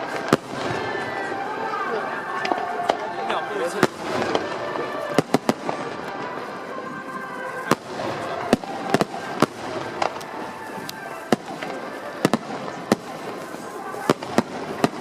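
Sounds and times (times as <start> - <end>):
continuous background din: 0.0 - 15.0.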